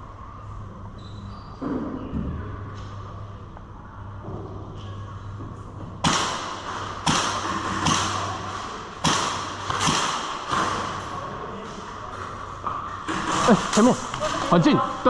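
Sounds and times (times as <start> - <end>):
airsoft gun shots echoing: 6.0 - 8.3, 9.0 - 11.0.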